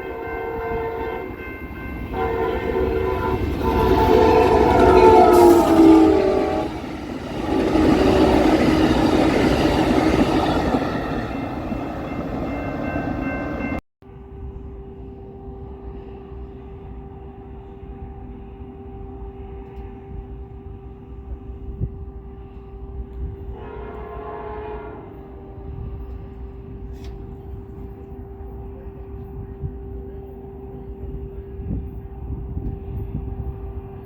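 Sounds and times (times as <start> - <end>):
passing train rushing: 0.0 - 13.8
train horn chord: 0.0 - 13.8, 15.7 - 34.0.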